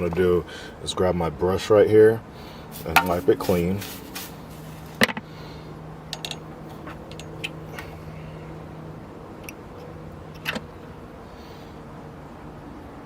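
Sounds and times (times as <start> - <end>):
steady low hum: 2.4 - 9.2.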